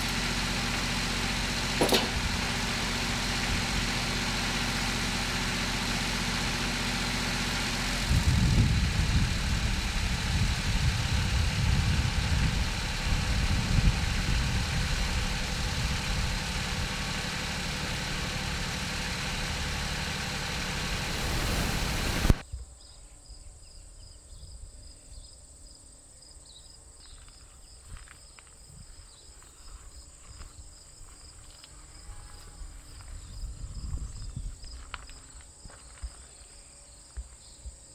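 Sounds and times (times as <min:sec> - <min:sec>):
engine idling: 0:00.0 - 0:22.4.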